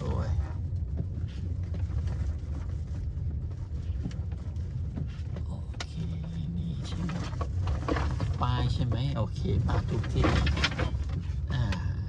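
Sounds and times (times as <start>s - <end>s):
car engine and road noise: 0.0s - 12.0s.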